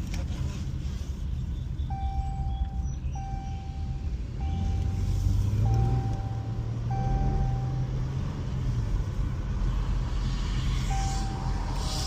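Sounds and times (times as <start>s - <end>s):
car engine rumbling: 0.0s - 12.0s
electronic beeps: 1.8s - 8.0s, 10.9s - 12.0s.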